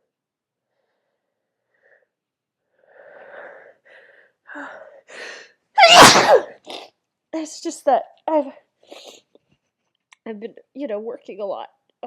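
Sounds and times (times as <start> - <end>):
woman sneezing: 5.8 - 6.9.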